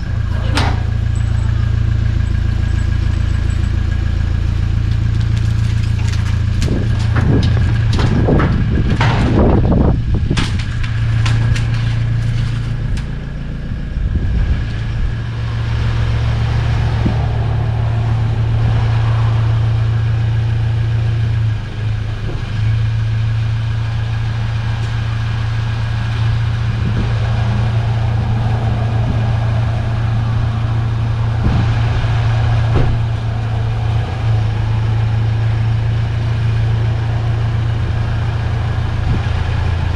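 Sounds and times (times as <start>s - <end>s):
car engine idling: 0.0s - 39.9s
clattering knocks and clicks: 4.9s - 13.2s.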